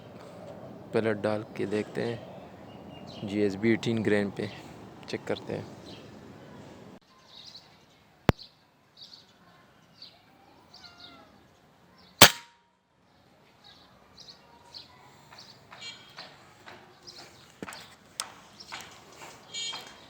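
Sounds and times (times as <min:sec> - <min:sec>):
faint birds chirping: 0:00.0 - 0:12.2, 0:13.1 - 0:20.0
air rifle shot crack: 0:12.2 - 0:12.5.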